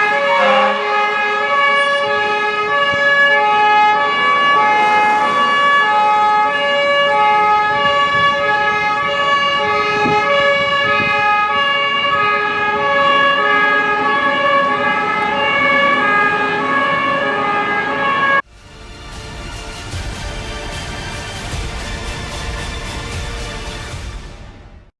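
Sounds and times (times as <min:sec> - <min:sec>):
fire engine two-tone siren: 0:00.0 - 0:18.5.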